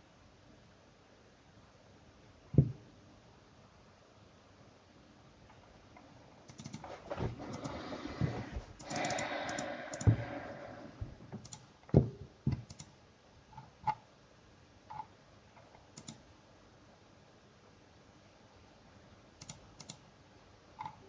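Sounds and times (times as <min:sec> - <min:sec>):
keyboard and mouse clicks: 0:06.4 - 0:10.7, 0:11.3 - 0:13.0, 0:14.9 - 0:16.2, 0:19.4 - 0:20.1, 0:20.8 - 0:21.0.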